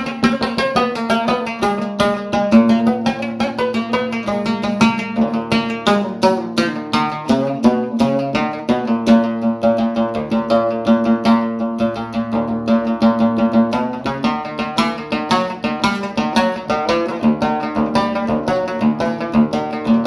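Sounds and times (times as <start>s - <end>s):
plucked string instrument: 0.0s - 20.0s.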